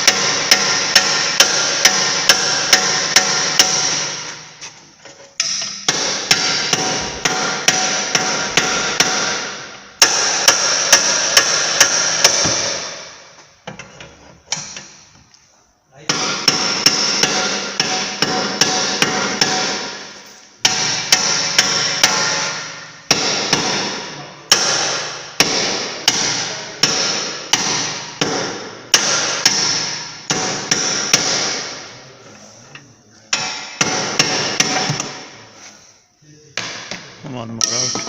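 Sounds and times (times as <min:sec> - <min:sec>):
hammer striking steel: 0:00.0 - 0:04.5, 0:05.4 - 0:13.9, 0:16.1 - 0:32.1, 0:33.3 - 0:35.5, 0:36.6 - 0:38.0.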